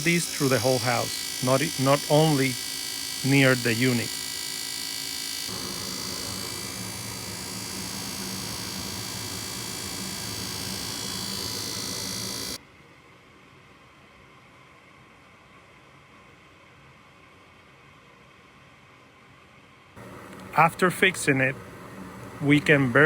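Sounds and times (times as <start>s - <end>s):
furnace fan screeching: 0.0s - 12.6s, 20.0s - 23.0s
faint steady hiss: 20.0s - 23.0s.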